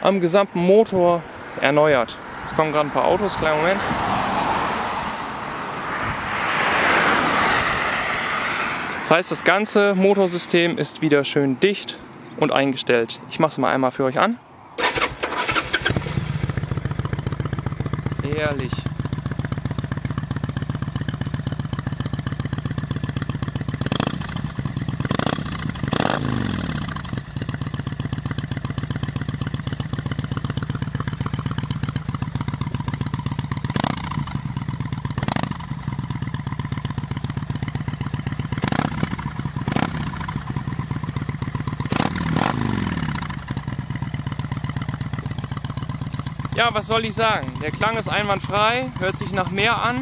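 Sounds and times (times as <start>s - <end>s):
motorcycle engine idling: 14.8s - 50.0s.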